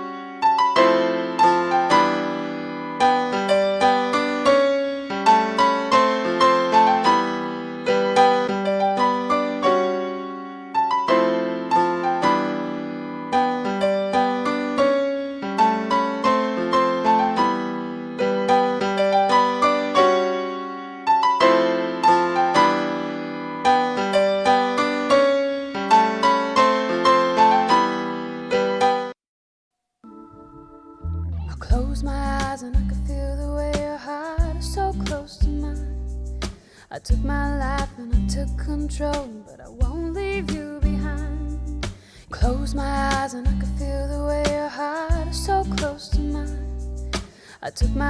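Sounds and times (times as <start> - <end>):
piano-like keyboard chords: 0.0 - 29.2, 30.0 - 31.8.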